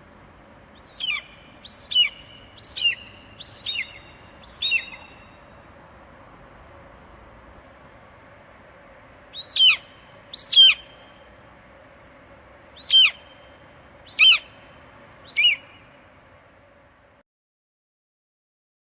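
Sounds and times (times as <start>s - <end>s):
faint steady hiss: 0.0s - 17.2s
eagle screaming: 9.4s - 10.9s.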